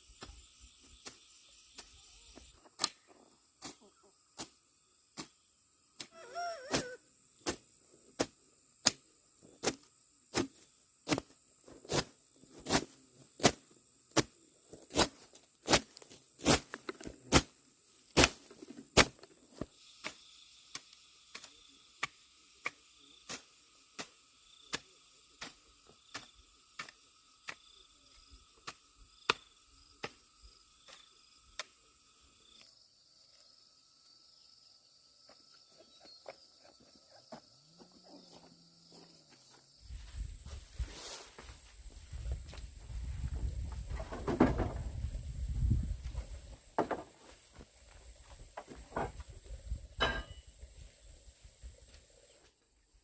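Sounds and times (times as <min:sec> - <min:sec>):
insect trilling: 0:03.6 - 0:07.5.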